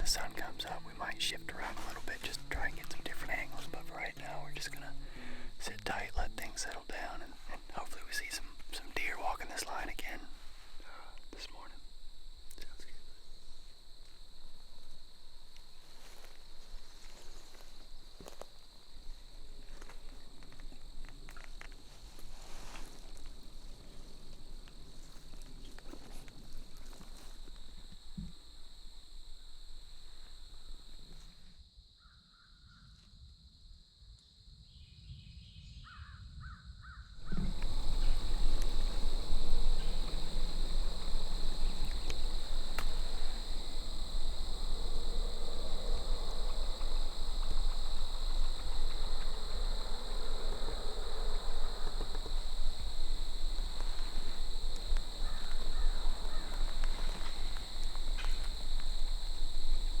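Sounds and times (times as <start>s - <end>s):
insect chorus: 0.0s - 60.0s
crows cawing: 51.3s - 58.2s.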